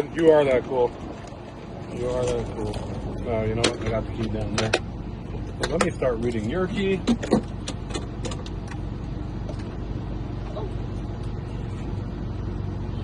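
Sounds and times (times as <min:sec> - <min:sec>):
vehicle engine idling: 0:00.0 - 0:13.0.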